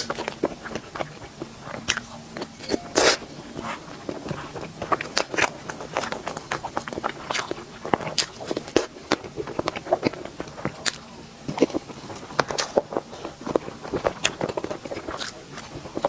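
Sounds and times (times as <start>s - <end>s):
person chewing sweets: 4.9s - 16.0s.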